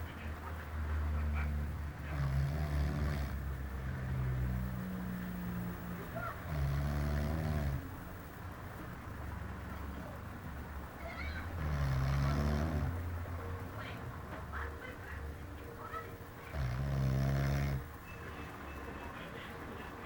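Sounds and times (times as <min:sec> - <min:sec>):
person snoring: 0:02.1 - 0:03.4, 0:06.5 - 0:07.9, 0:11.6 - 0:13.0, 0:16.5 - 0:17.8.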